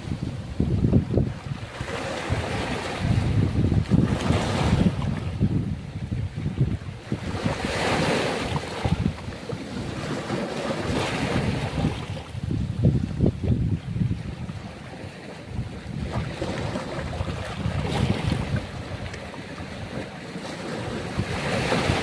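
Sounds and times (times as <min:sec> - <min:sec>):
wind buffeting microphone: 0:00.0 - 0:22.0
ocean surf breaking: 0:07.1 - 0:22.0.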